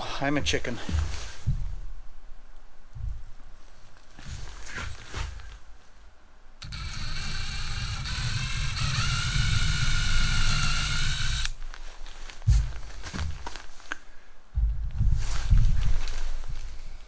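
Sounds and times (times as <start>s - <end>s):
power drill boring into wood: 6.6s - 11.6s.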